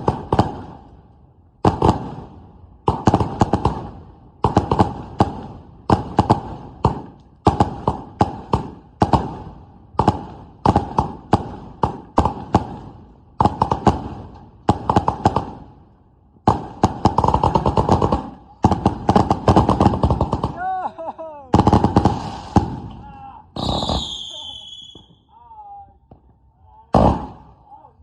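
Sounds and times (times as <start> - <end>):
firework bangs: 0.0 - 1.0, 1.6 - 15.8, 16.4 - 25.3, 27.0 - 27.6.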